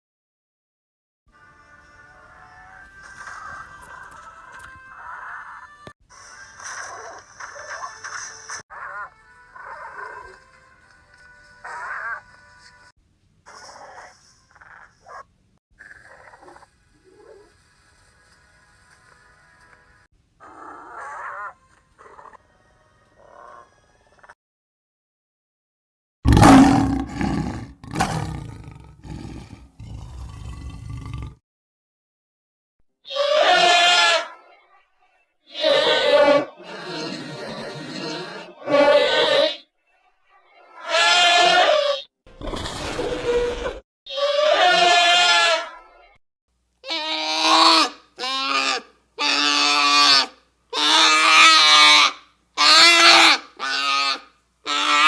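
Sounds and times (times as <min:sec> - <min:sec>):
dinosaur calls: 0:26.3 - 0:31.3, 0:35.5 - 0:39.6, 0:46.9 - 0:55.0
loud dinosaur roar: 0:26.3 - 0:31.4.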